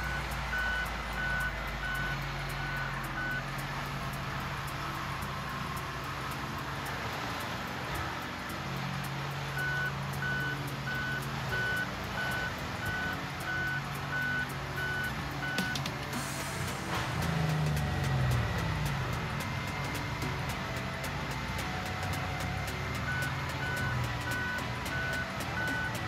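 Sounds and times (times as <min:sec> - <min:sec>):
backup alarm beeping: 0:00.0 - 0:03.6, 0:09.6 - 0:15.8, 0:23.0 - 0:26.0
heavy machine engine running: 0:00.0 - 0:26.0.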